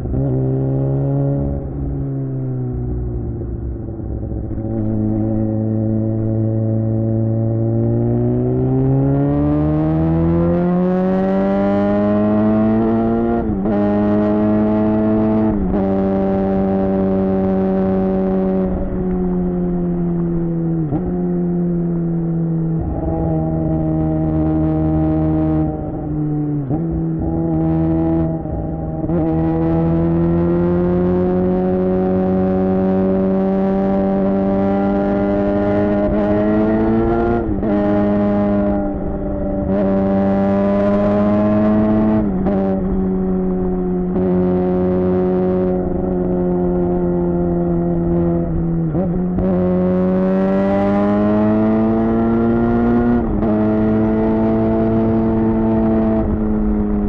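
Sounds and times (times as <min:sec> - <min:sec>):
motorcycle engine revving through gears: 0:00.0 - 0:57.0.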